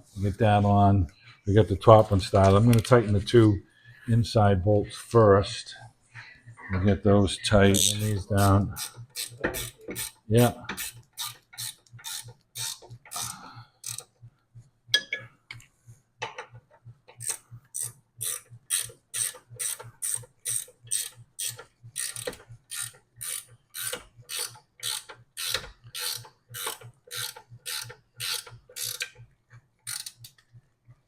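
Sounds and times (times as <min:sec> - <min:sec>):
ratchet wrench clicking: 0:08.8 - 0:10.2, 0:10.8 - 0:14.1, 0:17.2 - 0:29.2, 0:29.8 - 0:30.4.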